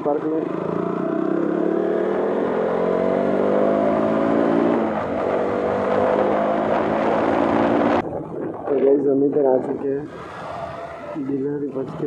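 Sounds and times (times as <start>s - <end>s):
motorcycle engine while riding: 0.0s - 9.0s.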